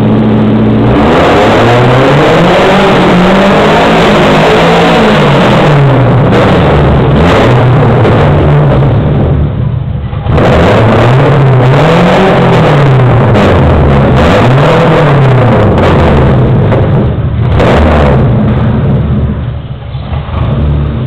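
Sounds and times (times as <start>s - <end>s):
car engine revving: 0.0s - 21.0s.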